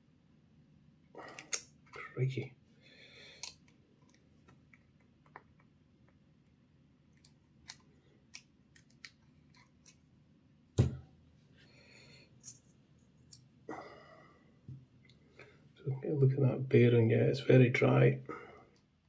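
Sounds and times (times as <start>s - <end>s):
small metal and plastic clicks: 3.4s - 5.7s, 7.1s - 10.0s.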